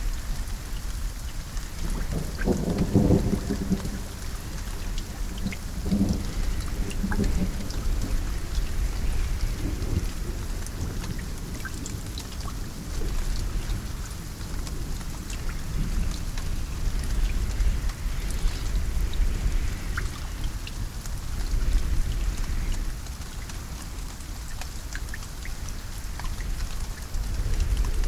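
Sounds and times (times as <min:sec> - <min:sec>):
steady rain: 0:00.0 - 0:28.0
distant thunder rumble: 0:01.7 - 0:12.0.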